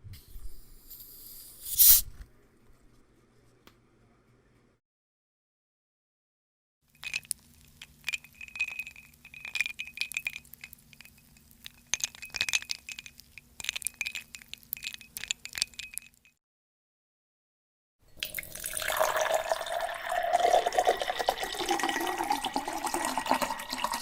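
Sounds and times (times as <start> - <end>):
glass clinking and rattling: 6.9 - 16.4, 18.2 - 24.0.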